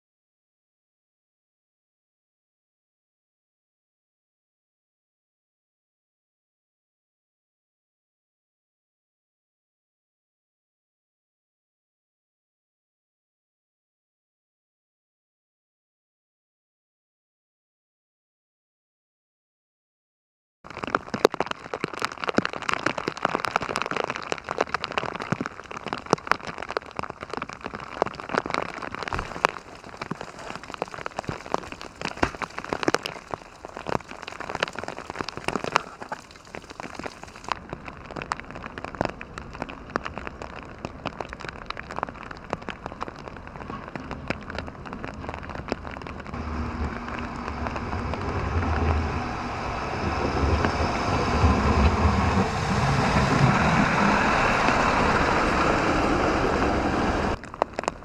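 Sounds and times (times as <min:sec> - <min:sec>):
freezing rain pattering on ice: 0:20.7 - 0:49.2, 0:50.6 - 0:58.0
vehicle rumbling: 0:35.7 - 0:57.5.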